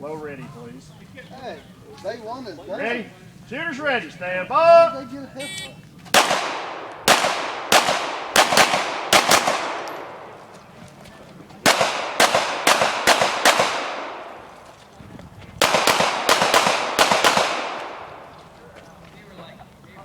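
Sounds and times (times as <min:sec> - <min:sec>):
pistol shots ringing: 0:06.2 - 0:10.4, 0:11.6 - 0:14.3, 0:15.6 - 0:18.2.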